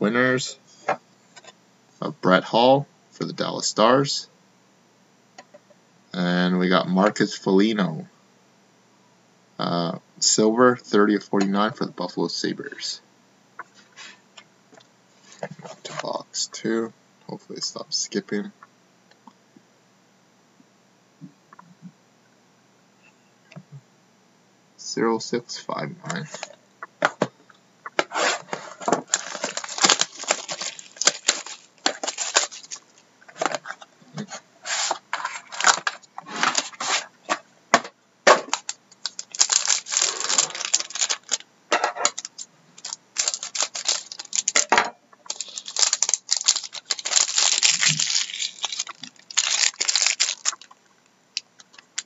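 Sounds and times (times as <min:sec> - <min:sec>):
cardboard and cards rustling: 0:28.0 - 0:50.7
plastic wrap tearing and crinkling: 0:28.2 - 0:33.8, 0:34.7 - 0:37.1, 0:38.3 - 0:41.4, 0:42.0 - 0:44.7, 0:45.3 - 0:50.8, 0:51.4 - 0:52.0.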